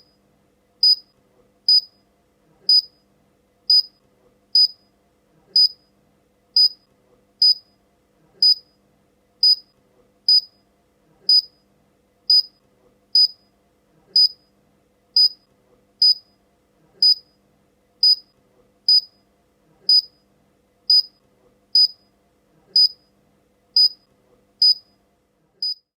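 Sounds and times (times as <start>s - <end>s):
short high-pitched electronic beeps: 25.6s - 25.9s.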